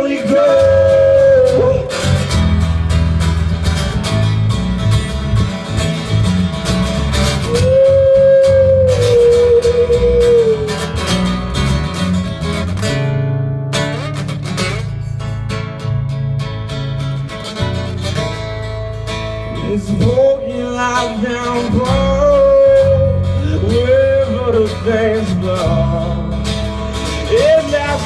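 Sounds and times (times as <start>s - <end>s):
live band playing: 0.0s - 16.0s
guitar lead note bending: 1.4s - 19.8s.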